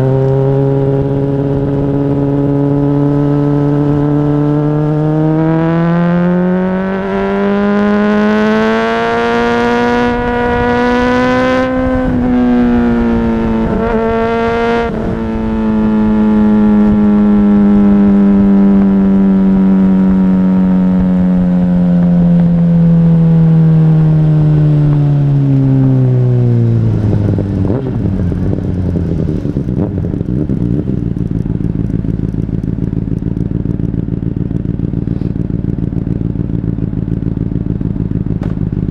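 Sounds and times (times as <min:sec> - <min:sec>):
motorcycle engine revving: 0:00.0 - 0:38.9
motorcycle engine idling: 0:24.5 - 0:38.9.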